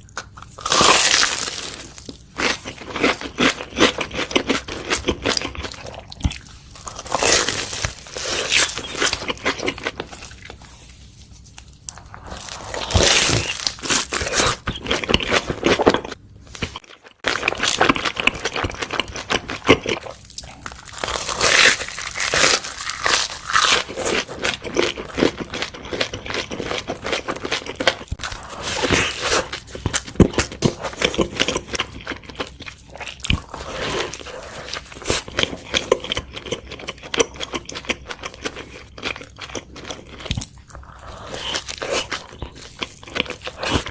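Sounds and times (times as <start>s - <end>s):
crunchy bites and chewing: 0.0s - 10.7s, 11.9s - 43.9s.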